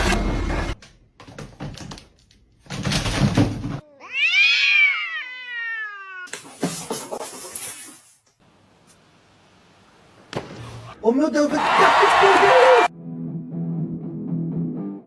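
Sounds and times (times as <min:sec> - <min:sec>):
cat meowing: 0:03.8 - 0:06.3.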